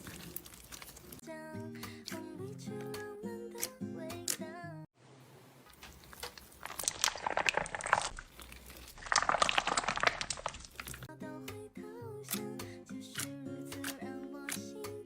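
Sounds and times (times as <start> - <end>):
slime crackling and popping: 0.0 - 1.2, 5.7 - 11.1.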